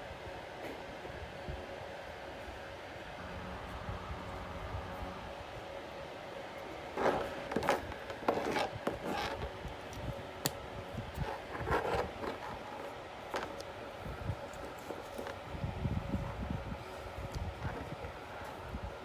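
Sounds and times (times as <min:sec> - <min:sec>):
faint steady hum: 0:00.0 - 0:19.0
scraping and rustling: 0:06.8 - 0:09.6, 0:11.0 - 0:13.8.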